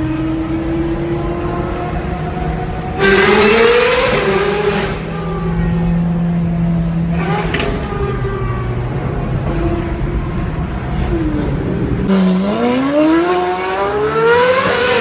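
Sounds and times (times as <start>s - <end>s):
sports car engine revving: 0.0s - 5.3s, 6.8s - 8.4s, 10.9s - 15.0s.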